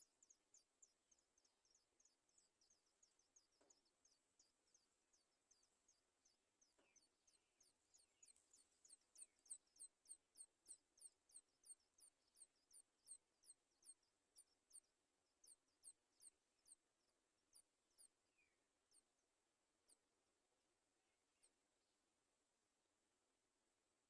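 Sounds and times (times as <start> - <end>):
high thin bird chirps: 0.0 - 16.8.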